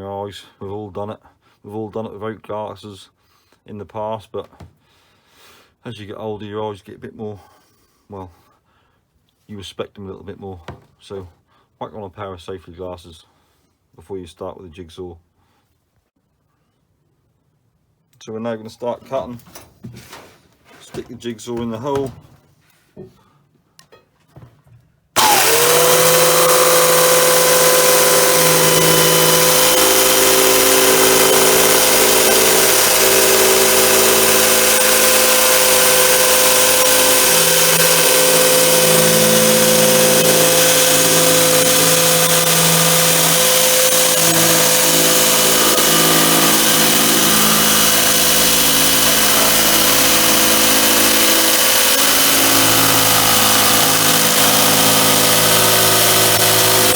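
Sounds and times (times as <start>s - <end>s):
jigsaw cutting plastic: 25.2s - 56.9s.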